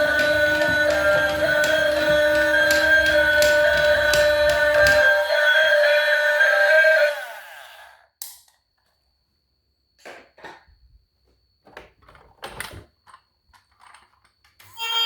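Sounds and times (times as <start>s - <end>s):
background music: 0.0s - 7.3s.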